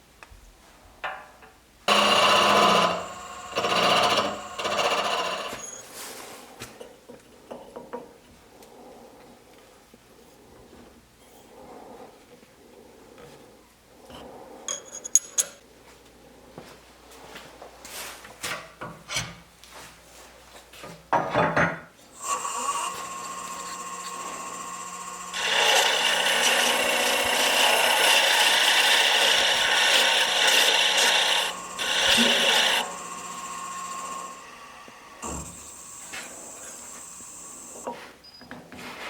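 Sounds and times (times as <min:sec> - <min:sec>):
wood lathe humming: 0:01.9 - 0:05.6, 0:22.2 - 0:37.9
tool scraping spinning wood: 0:01.9 - 0:05.7, 0:22.2 - 0:37.9.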